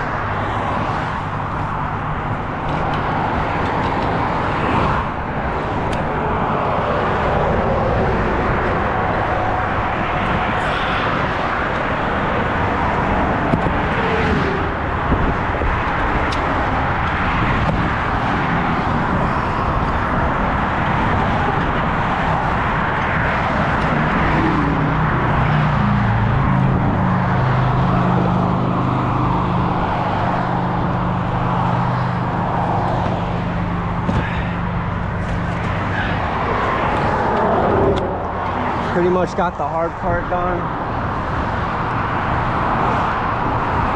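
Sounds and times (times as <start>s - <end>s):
highway traffic: 0.0s - 43.9s
low engine-like hum: 19.1s - 43.9s.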